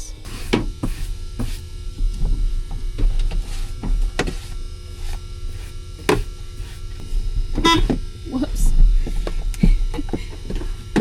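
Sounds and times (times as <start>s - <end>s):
small motor humming: 0.0s - 11.0s.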